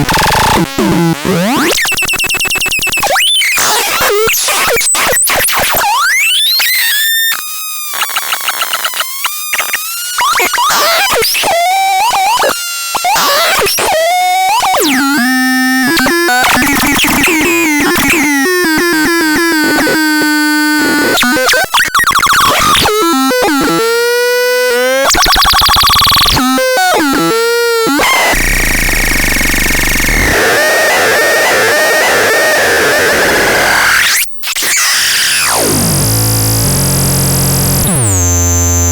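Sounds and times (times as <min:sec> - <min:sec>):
synthesizer electronic tones: 0:13.2 - 0:32.3.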